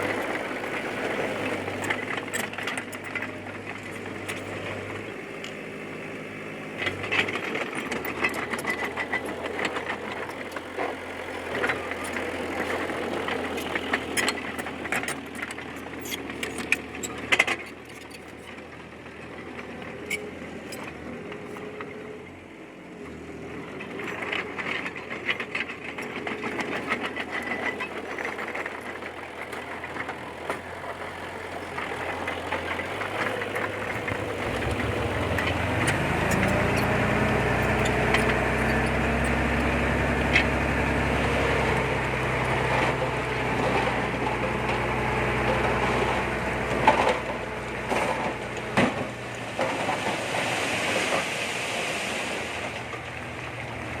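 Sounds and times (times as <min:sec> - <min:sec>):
bulldozer diesel engine under load: 0:00.0 - 0:54.0
metal clanks and rattles: 0:31.7 - 0:40.5.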